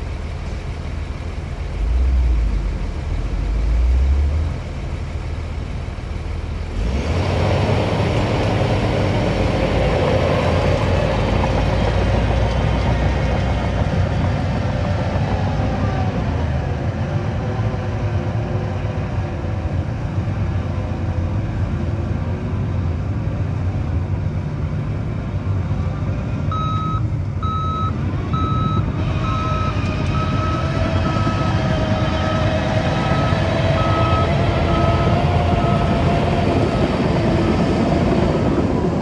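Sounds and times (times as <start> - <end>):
heavy diesel machinery running: 0.0 - 39.0
reversing alarm beeping: 26.5 - 37.3.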